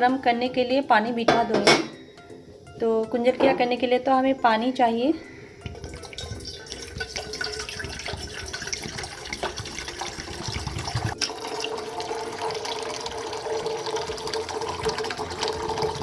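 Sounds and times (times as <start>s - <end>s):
water pouring into a pot: 5.7s - 16.0s.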